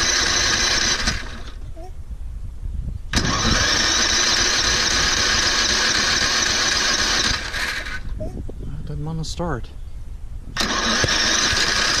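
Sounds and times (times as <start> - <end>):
mower starter motor cranking: 0.0 - 1.7, 3.1 - 8.1, 10.6 - 12.0.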